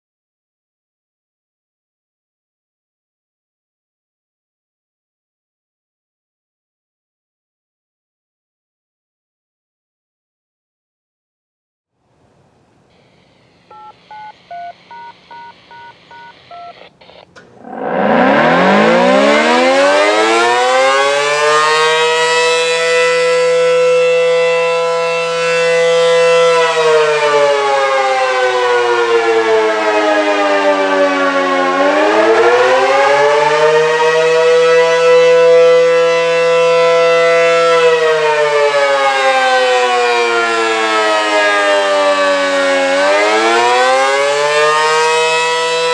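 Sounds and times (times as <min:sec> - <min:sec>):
faint two-tone electronic beeps: 0:13.6 - 0:17.3
warning siren winding: 0:13.7 - 0:24.0, 0:44.8 - 0:45.9.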